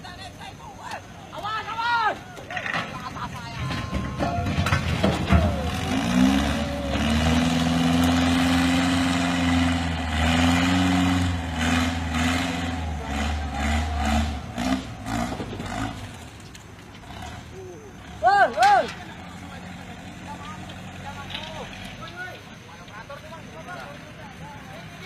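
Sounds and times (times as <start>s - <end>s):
heavy vehicle engine revving: 2.7s - 22.6s.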